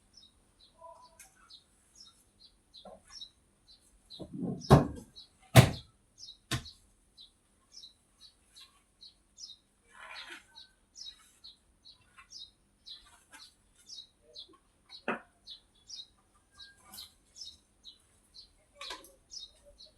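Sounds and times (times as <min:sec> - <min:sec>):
loud sharp knocks: 0:04.2 - 0:05.9
bird chirping: 0:06.2 - 0:19.9.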